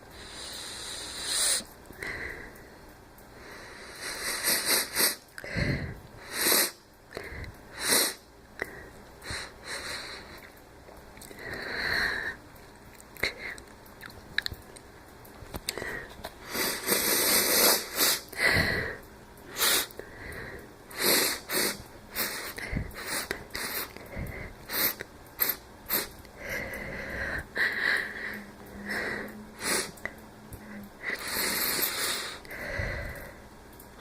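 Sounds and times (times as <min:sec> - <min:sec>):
wheezy laboured breathing: 0:00.0 - 0:02.8, 0:03.4 - 0:10.5, 0:15.7 - 0:33.5.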